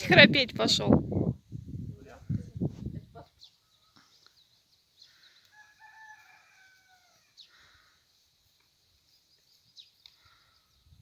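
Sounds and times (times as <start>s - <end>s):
faint rooster crow: 5.4s - 8.0s.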